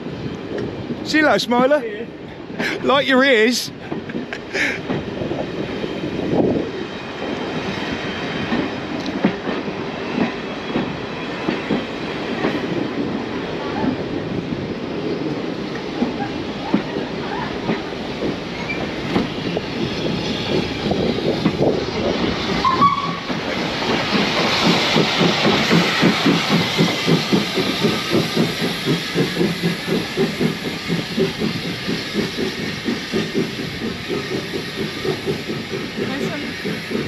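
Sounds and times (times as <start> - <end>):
steam train rhythmic clatter: 0.0 - 37.0
steam hiss: 10.5 - 37.0.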